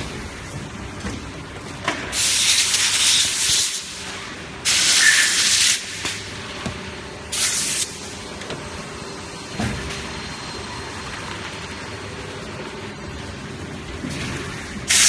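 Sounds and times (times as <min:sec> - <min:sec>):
pressurized air hissing: 0:02.1 - 0:04.0, 0:04.6 - 0:06.0, 0:07.3 - 0:08.0.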